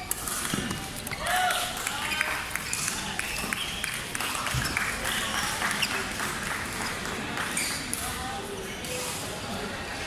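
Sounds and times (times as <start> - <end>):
scattered clapping: 1.6 - 7.6.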